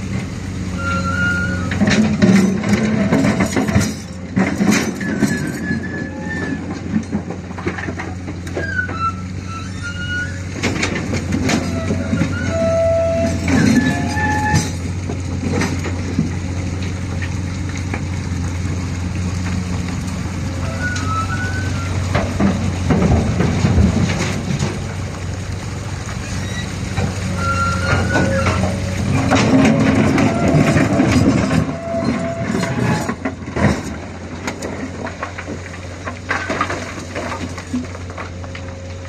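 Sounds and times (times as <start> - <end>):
excavator diesel engine: 0.0 - 39.0
rock and gravel clattering: 0.0 - 39.0
short high squeals: 0.7 - 1.7, 8.6 - 10.5, 11.6 - 14.8, 20.6 - 22.0, 26.2 - 28.7.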